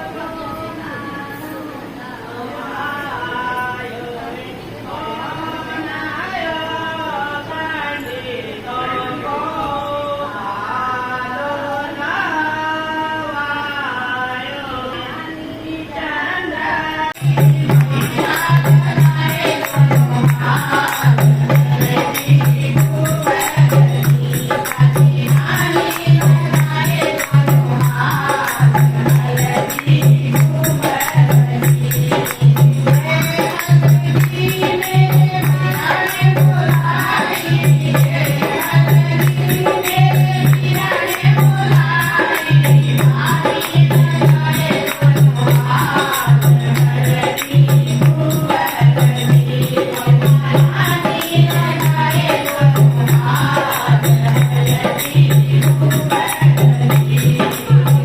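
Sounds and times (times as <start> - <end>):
several singers: 0.0 - 58.0
unaccompanied voices singing: 0.0 - 58.0
jingling percussion: 17.2 - 58.0.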